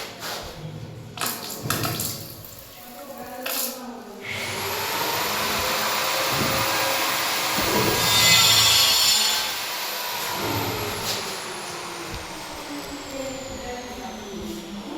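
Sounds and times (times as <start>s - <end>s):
small electric motor whirring: 4.3s - 14.9s.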